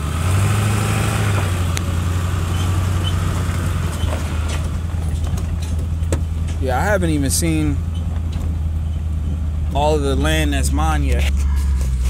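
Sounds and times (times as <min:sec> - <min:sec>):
truck engine low hum: 0:00.0 - 0:12.0
light knocks and rattles: 0:03.9 - 0:10.5.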